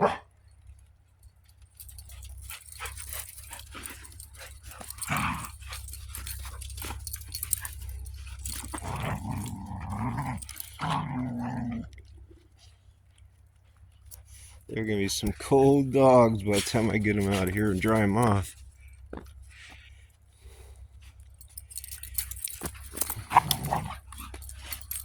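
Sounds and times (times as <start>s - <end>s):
dog vocal sounds: 2.0s - 12.4s, 16.4s - 18.5s, 21.8s - 25.0s
scuffling and rustling in snow: 15.1s - 18.6s.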